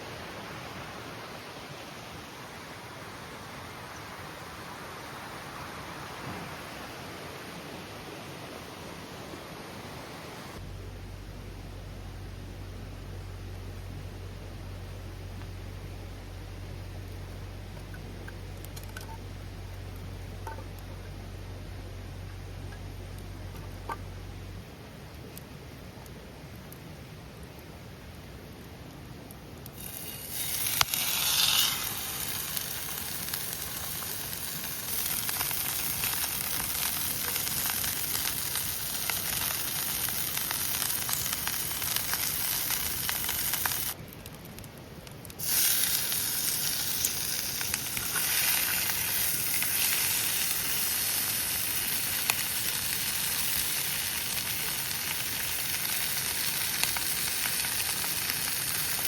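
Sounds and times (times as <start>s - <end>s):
food sizzling in a pan: 29.8s - 44.0s, 45.4s - 59.0s.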